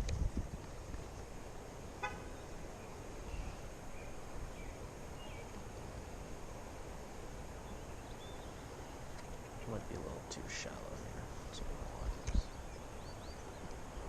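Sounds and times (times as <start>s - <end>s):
low river rumble: 0.0s - 14.0s
faint high bird chirps: 7.6s - 9.7s, 12.1s - 13.8s.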